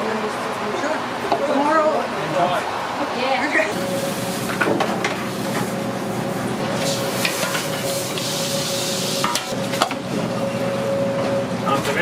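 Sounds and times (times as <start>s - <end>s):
steady hum: 2.3s - 12.0s
steady cooking hiss: 3.7s - 9.6s.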